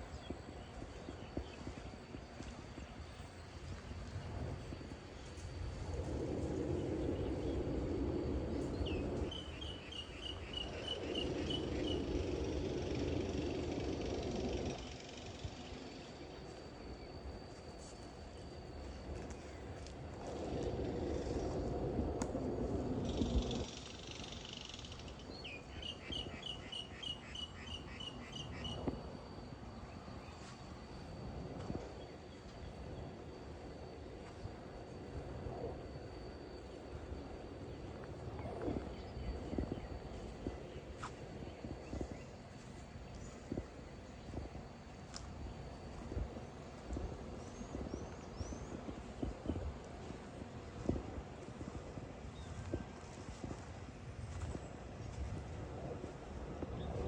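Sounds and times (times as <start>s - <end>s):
high insect drone: 0.0s - 57.0s
distant road traffic rumble: 3.8s - 16.6s
faint steady high tone: 14.5s - 20.2s.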